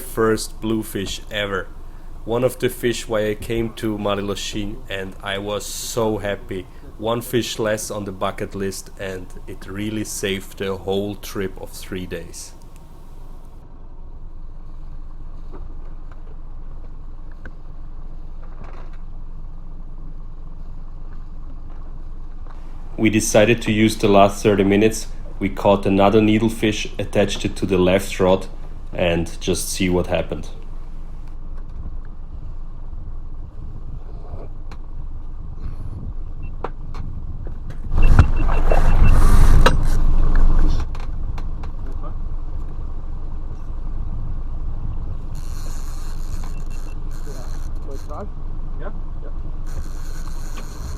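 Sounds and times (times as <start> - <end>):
boat engine running: 0.0 - 13.5
loud rushing noise: 37.9 - 40.7.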